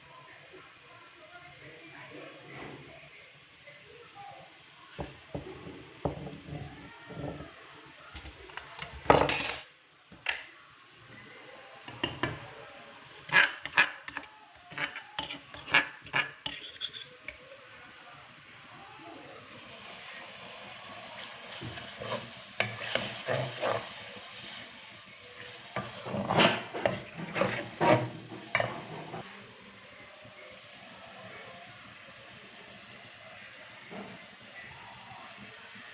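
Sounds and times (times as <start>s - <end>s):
food sizzling: 0.0s - 35.9s
metal spoon scraping a pan: 13.1s - 17.4s, 21.5s - 24.8s, 25.4s - 29.3s.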